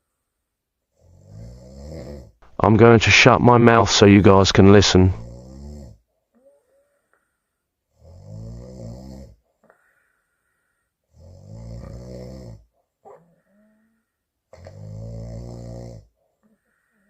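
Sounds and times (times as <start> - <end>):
quiet breaths: 0.0 - 2.6, 5.2 - 17.0
woman snoring: 1.0 - 2.4, 8.0 - 10.0, 11.1 - 17.0.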